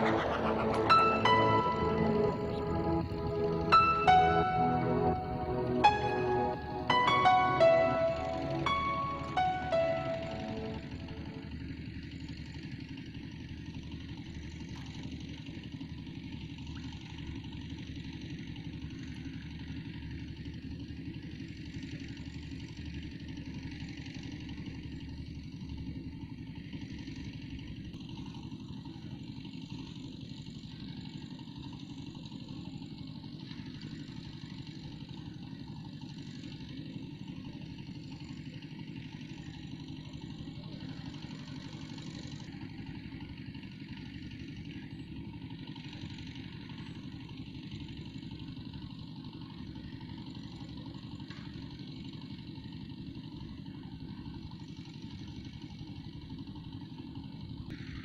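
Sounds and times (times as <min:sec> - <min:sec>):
constant hiss: 0:00.0 - 0:11.4
engine running: 0:00.0 - 0:58.0.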